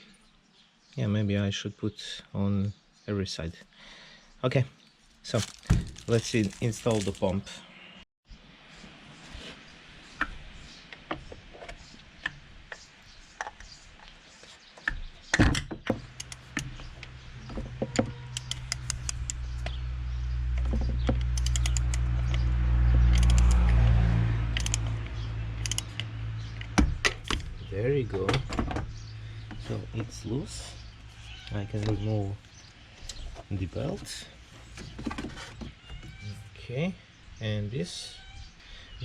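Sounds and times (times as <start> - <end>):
metal tools clicking: 21.2 - 22.0, 23.1 - 23.6, 24.6 - 24.9, 25.6 - 26.7.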